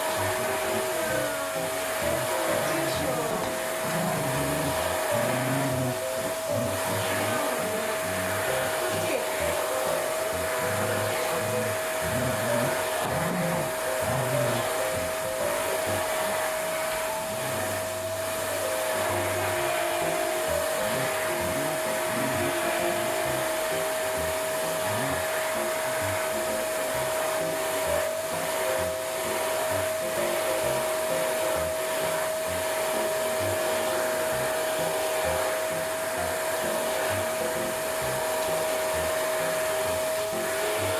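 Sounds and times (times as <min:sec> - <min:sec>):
vacuum motor whine: 0:00.0 - 0:40.9.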